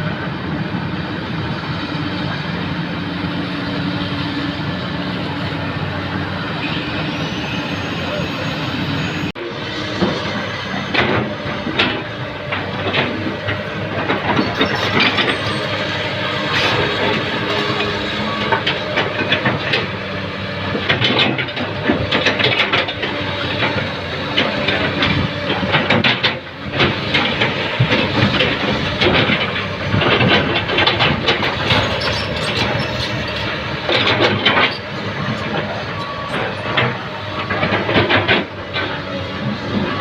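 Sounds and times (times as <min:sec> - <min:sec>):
diesel engine running: 0:00.0 - 0:40.0
excavator clanking and rattling: 0:09.3 - 0:40.0.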